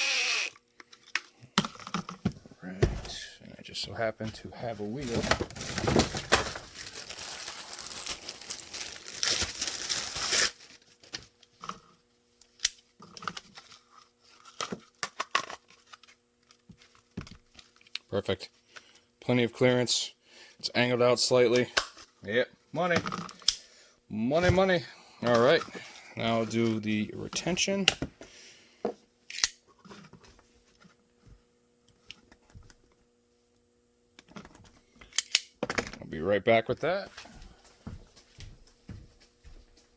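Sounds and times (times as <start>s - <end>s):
faint steady hum: 0.0s - 39.9s
packaging crinkling: 5.6s - 11.0s.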